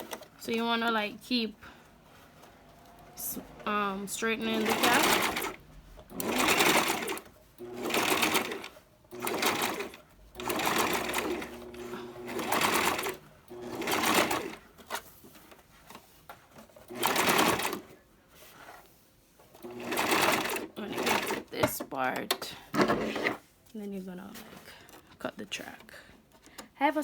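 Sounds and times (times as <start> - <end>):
electric sewing machine stitching: 3.0 - 14.6, 16.8 - 17.9, 19.6 - 21.5.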